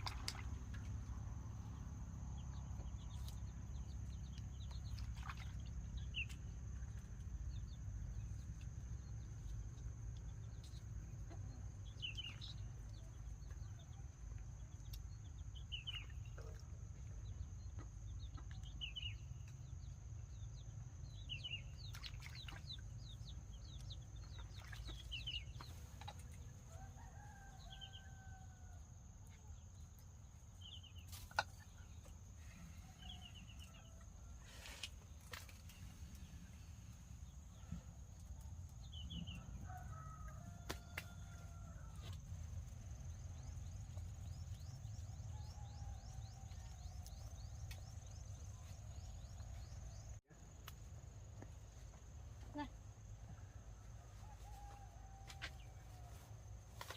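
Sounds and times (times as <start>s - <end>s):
low steady rumble: 0.0s - 26.8s.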